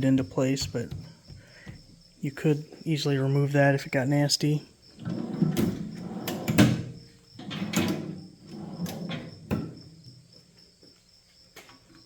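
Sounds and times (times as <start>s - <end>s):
metal drawers sliding and knocking shut: 5.0s - 10.0s.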